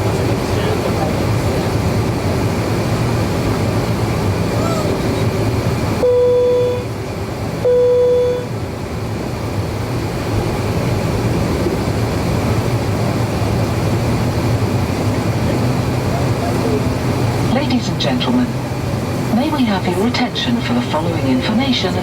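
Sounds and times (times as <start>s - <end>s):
airplane cabin hum: 0.0s - 22.0s
short beeps: 6.0s - 6.9s, 7.6s - 8.5s.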